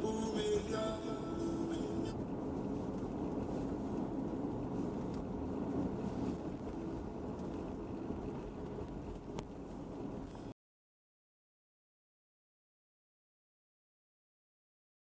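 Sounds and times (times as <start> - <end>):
vehicle engine and road rumble: 0.0 - 10.6.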